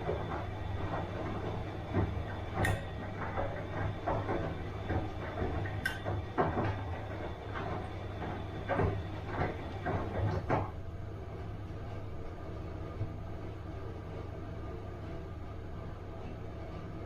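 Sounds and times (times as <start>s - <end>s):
laundry sloshing in drum: 0.0s - 10.8s
washing machine hum: 0.0s - 17.0s.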